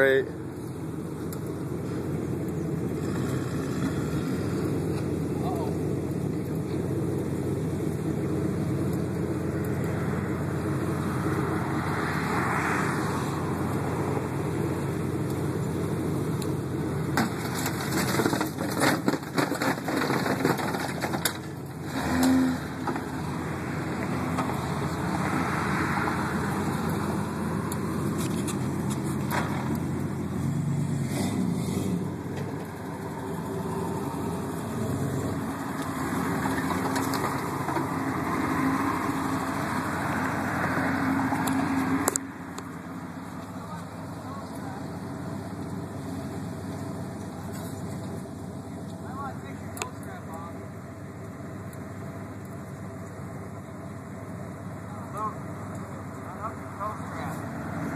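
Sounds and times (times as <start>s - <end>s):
off-road vehicle engine running: 0.0s - 57.9s
sharp knocks and clatter: 17.1s - 23.2s, 28.1s - 29.9s, 35.8s - 38.6s.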